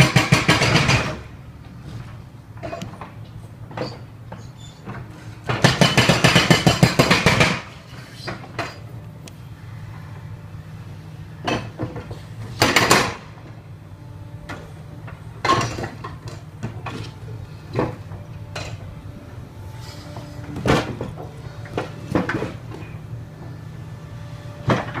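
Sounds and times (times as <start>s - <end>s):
construction knocks and bangs: 0.0s - 8.9s, 11.4s - 13.6s, 14.4s - 23.7s, 24.5s - 25.0s
low machine hum: 8.8s - 25.0s.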